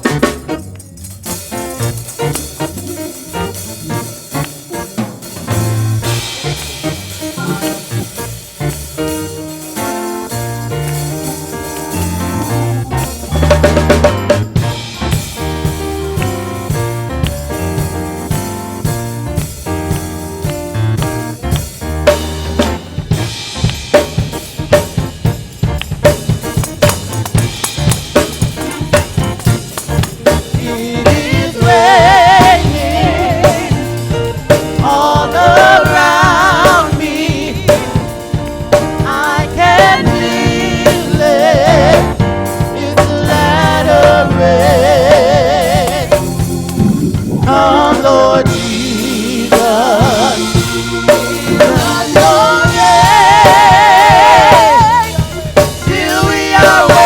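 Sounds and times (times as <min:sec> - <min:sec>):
drum kit groove: 0:00.0 - 0:57.0
singers holding long notes: 0:30.2 - 0:57.0.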